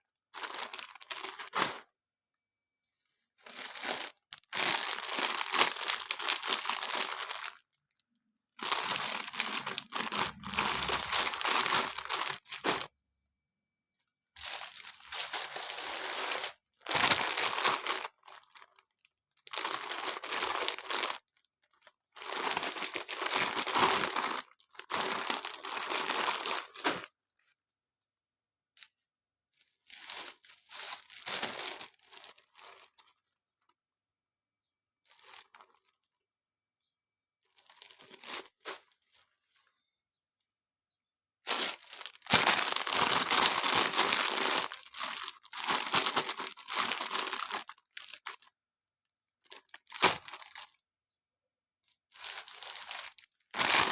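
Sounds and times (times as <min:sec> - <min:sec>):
plastic packaging crinkling and tearing: 0:00.4 - 0:01.8, 0:03.4 - 0:07.7, 0:08.6 - 0:12.9, 0:14.4 - 0:18.8, 0:19.4 - 0:27.1, 0:41.5 - 0:48.5, 0:49.5 - 0:50.8, 0:52.2 - 0:53.9.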